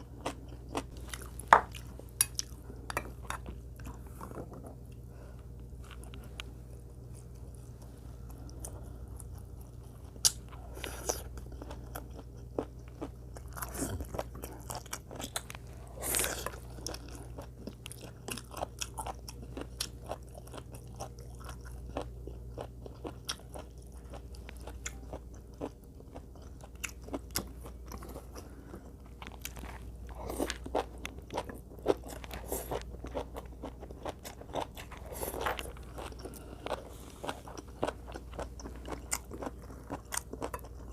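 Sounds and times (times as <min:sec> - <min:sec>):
person chewing food: 0:00.0 - 0:40.9.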